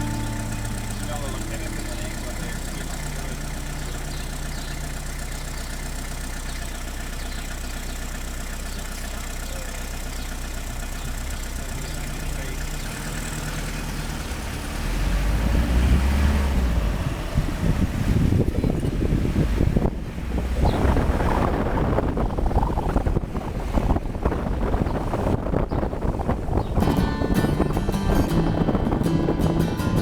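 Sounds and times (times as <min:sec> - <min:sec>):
car engine running: 0:00.0 - 0:30.0
wind buffeting microphone: 0:14.4 - 0:30.0.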